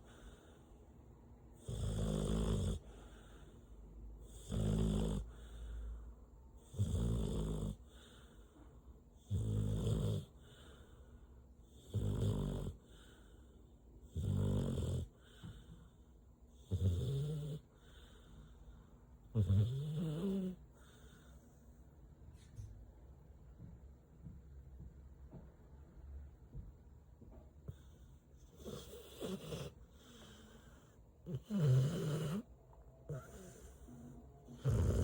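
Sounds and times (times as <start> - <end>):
dog snoring: 1.6 - 3.6, 4.2 - 5.8, 6.6 - 8.6, 9.2 - 21.6, 27.6 - 32.5, 33.1 - 35.0
dog breathing: 1.8 - 4.5, 10.0 - 13.7, 17.2 - 19.0, 27.7 - 32.5, 33.1 - 35.0.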